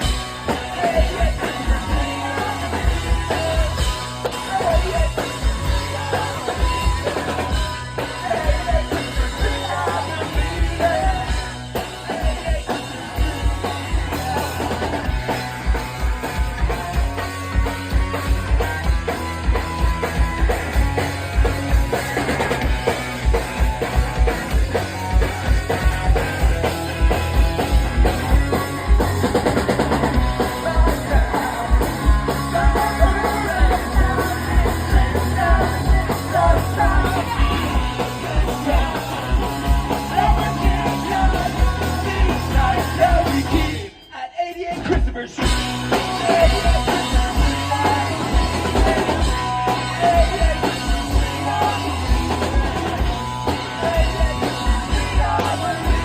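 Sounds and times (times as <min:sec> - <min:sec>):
rock band playing live: 0:00.0 - 0:56.0.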